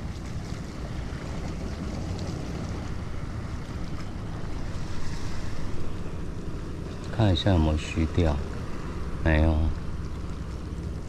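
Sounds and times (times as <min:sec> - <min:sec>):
waves washing against rocks: 0:00.0 - 0:07.1
wind rumbling on microphone: 0:00.0 - 0:11.0.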